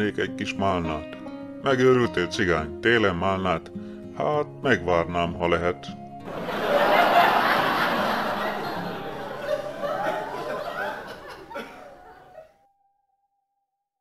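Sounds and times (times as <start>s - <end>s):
audience laughter: 6.3s - 12.5s.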